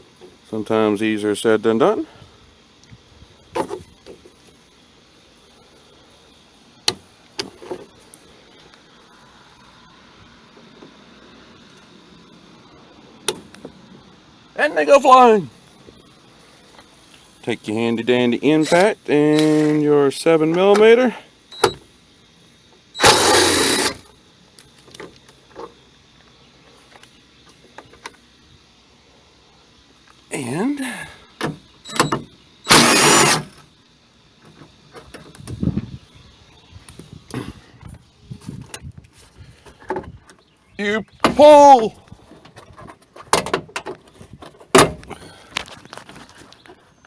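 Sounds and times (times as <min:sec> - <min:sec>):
cordless impact driver running: 0:23.0 - 0:24.1, 0:32.7 - 0:33.6.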